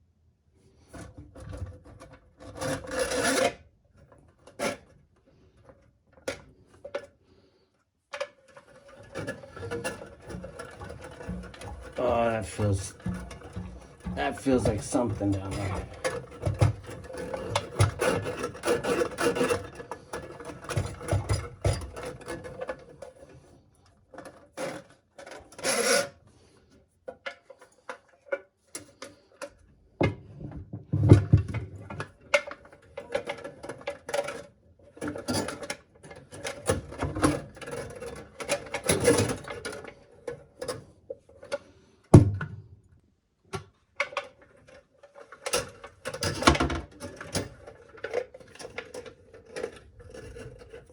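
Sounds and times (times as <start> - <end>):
drain snake scraping and rattling: 8.8 - 22.7.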